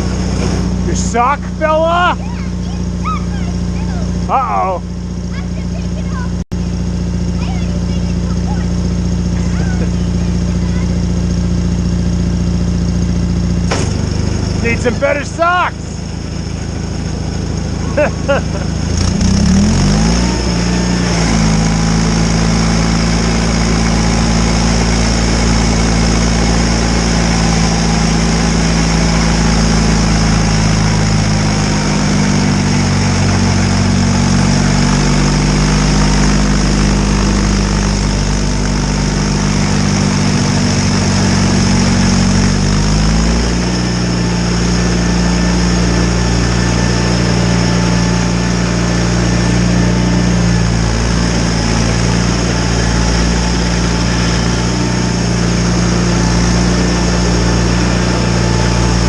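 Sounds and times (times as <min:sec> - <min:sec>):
garden tractor engine running: 0:00.0 - 0:59.0
snowblower whirring: 0:00.0 - 0:59.0.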